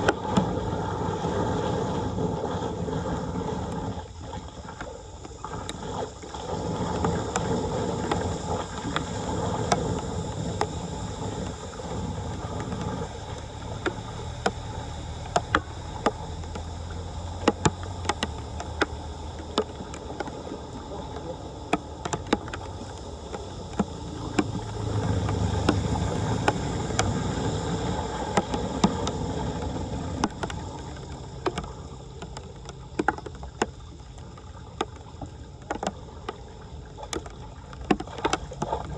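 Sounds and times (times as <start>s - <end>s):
floodwater sloshing and rushing: 0.0s - 38.9s
rumbling water surges: 0.0s - 38.9s
sharp clicks and knocks: 7.0s - 36.4s.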